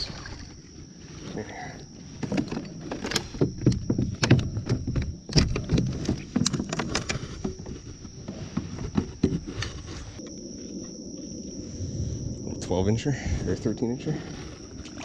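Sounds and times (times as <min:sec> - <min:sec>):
insects whining: 0:00.0 - 0:15.0
knocks and thuds against kayak: 0:02.2 - 0:09.9.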